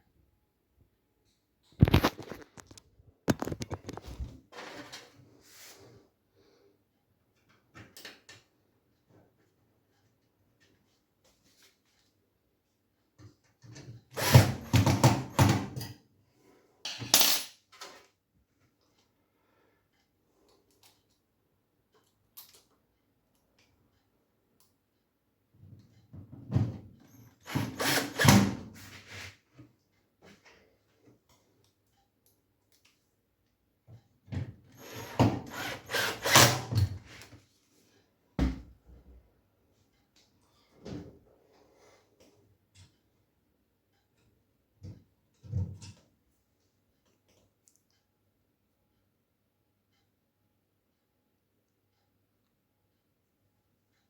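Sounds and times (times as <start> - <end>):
parts clattering and scraping: 1.8 - 5.2.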